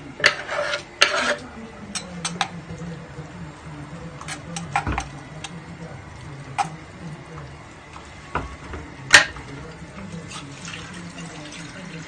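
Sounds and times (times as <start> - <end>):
kitchen utensils clinking: 0.2 - 2.6, 8.3 - 11.8.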